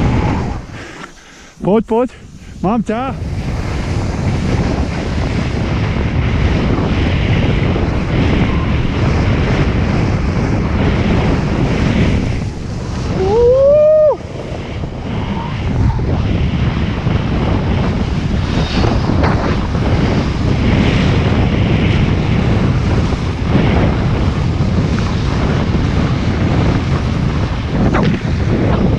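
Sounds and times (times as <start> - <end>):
wind buffeting microphone: 0.0 - 28.9
person yelling: 13.2 - 14.2.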